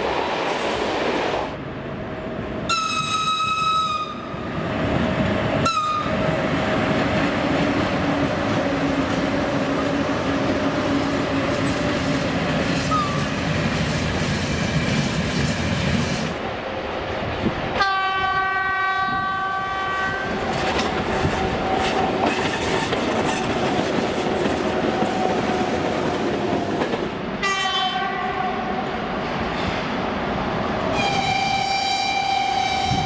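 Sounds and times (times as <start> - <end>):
moving train rumble and clatter: 0.0 - 33.0
locomotive whistle: 2.7 - 4.3, 5.6 - 6.2, 30.9 - 33.0.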